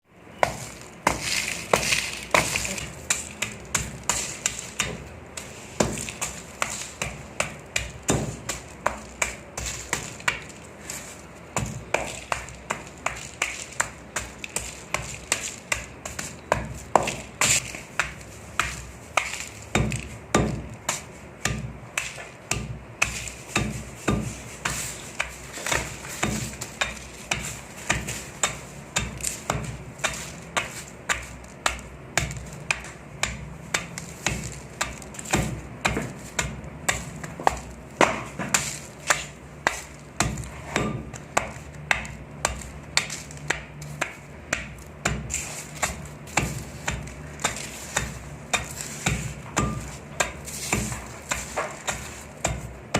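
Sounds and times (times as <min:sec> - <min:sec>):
sand chunks crunching: 0:00.4 - 0:52.9.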